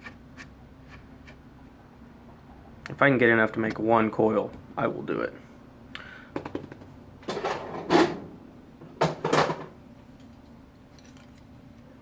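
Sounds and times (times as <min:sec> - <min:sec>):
faint steady hum: 0:00.0 - 0:12.0
tool clattering and scraping: 0:07.2 - 0:08.2.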